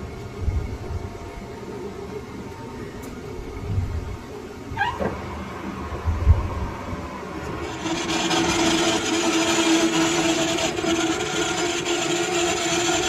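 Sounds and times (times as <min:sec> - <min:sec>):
lathe tool cutting steel: 0:07.3 - 0:13.0.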